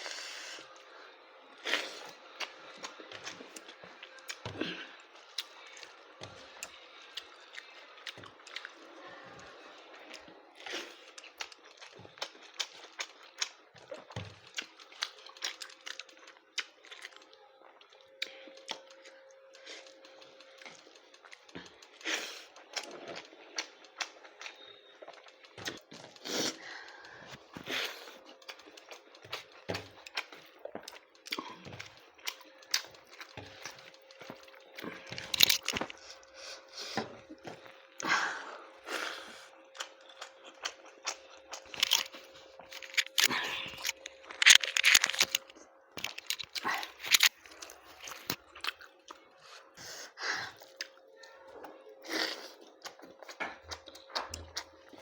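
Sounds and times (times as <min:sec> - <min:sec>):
person chewing and smacking: 0:01.5 - 0:08.8, 0:09.4 - 0:38.1, 0:39.3 - 0:49.6, 0:50.5 - 0:55.0.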